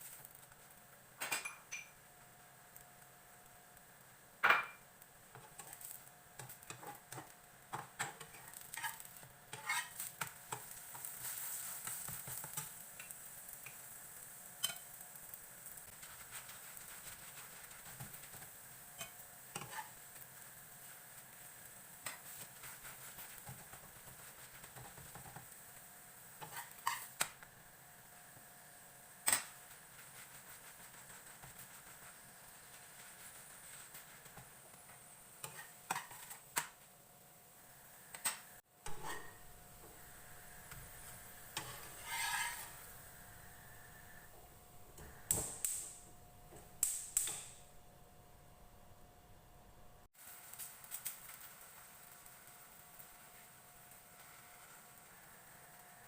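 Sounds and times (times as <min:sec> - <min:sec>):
utensils and dishes clinking: 0:01.2 - 0:02.0
hiss: 0:10.2 - 0:34.8.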